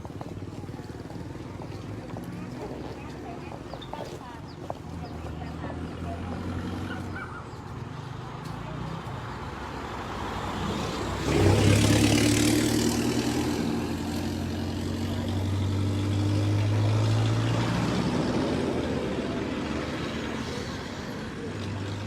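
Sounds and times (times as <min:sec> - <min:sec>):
road noise: 0:00.0 - 0:22.0
vehicle engine running: 0:10.5 - 0:22.0.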